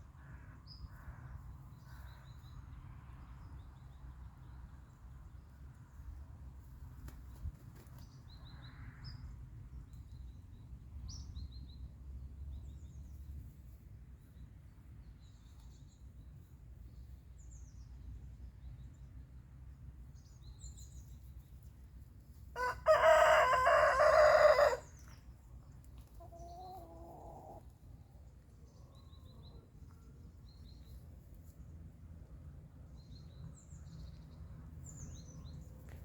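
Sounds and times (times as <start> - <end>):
rooster crowing: 22.6 - 24.9.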